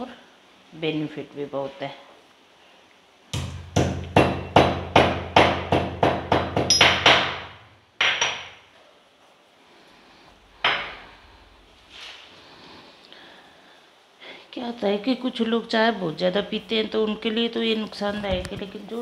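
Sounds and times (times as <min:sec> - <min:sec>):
pestle pounding pods: 0:03.3 - 0:08.5.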